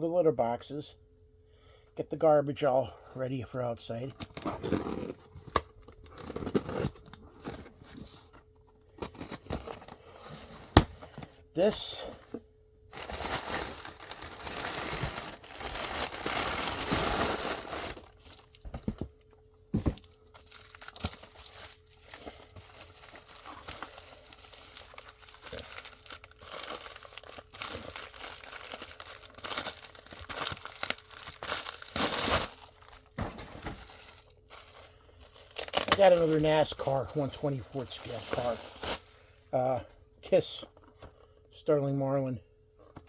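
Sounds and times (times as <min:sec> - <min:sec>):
faint steady hum: 0:00.0 - 0:43.0
packaging crinkling and tearing: 0:12.9 - 0:19.0, 0:19.9 - 0:39.2.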